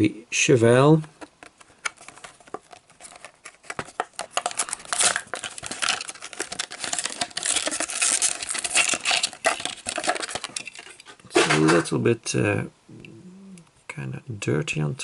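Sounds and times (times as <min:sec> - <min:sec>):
plastic packaging crinkling and tearing: 0:01.7 - 0:11.4.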